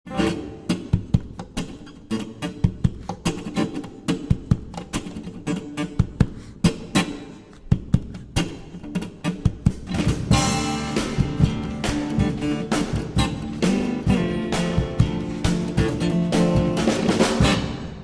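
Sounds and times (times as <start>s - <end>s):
plucked guitar tune: 0.0s - 18.0s
steady regular beat: 9.5s - 18.0s.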